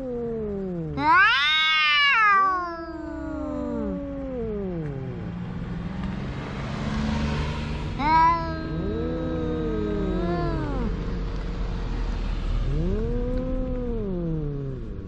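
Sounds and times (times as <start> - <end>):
cat meowing loudly: 0.0 - 5.1, 8.0 - 10.9.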